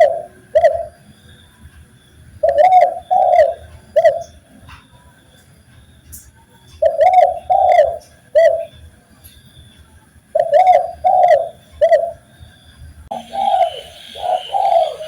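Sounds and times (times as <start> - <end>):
dove cooing: 0.0 - 1.0, 2.4 - 4.4, 6.8 - 8.7, 10.4 - 12.2, 13.1 - 15.0.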